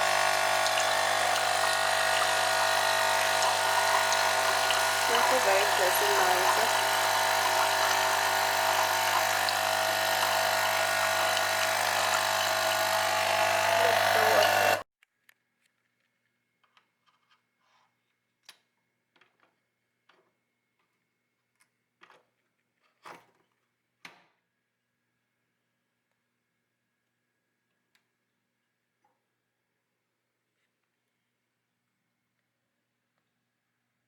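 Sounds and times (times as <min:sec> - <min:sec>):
coffee machine pump buzzing: 0:00.0 - 0:14.8.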